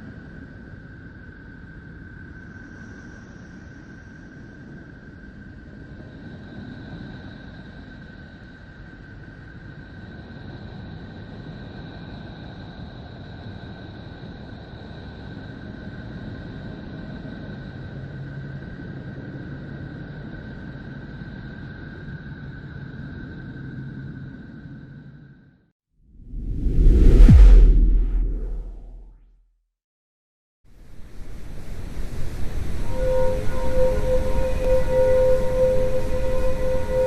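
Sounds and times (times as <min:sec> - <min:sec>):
rumbling drone: 0:26.2 - 0:29.1.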